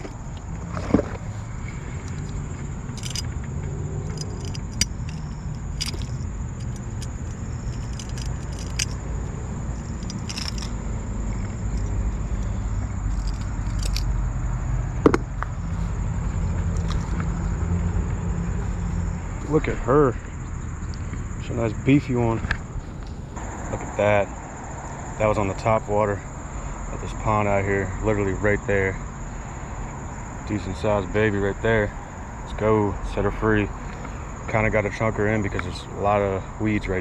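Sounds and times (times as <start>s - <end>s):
high insect drone: 0.0s - 37.0s
steady low rumble: 1.4s - 14.2s
light metallic clinks: 1.7s - 3.4s, 4.0s - 14.2s.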